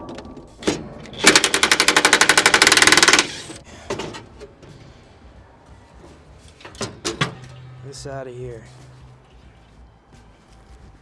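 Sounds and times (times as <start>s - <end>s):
impact wrench rattling: 0.0s - 4.6s
tools clanking: 0.0s - 4.9s, 6.0s - 7.7s.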